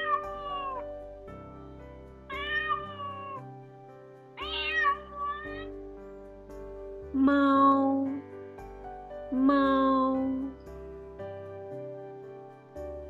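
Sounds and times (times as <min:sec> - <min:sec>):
cat meowing: 0:00.0 - 0:00.9, 0:02.3 - 0:03.5, 0:04.4 - 0:05.7
soft background music: 0:00.0 - 0:13.0.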